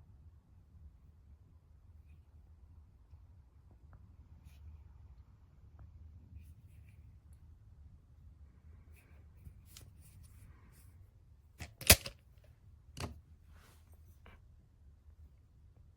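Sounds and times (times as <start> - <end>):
handling clicks and knocks: 11.6 - 12.2, 13.0 - 13.2.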